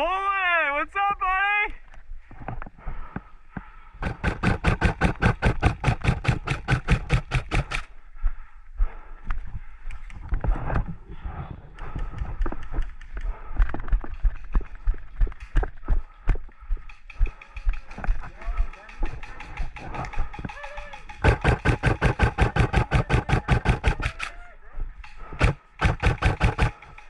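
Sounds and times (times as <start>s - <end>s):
airsoft gun firing shots: 4.0s - 7.9s, 18.9s - 24.3s, 25.3s - 27.0s
knocks and clatter: 11.9s - 24.1s.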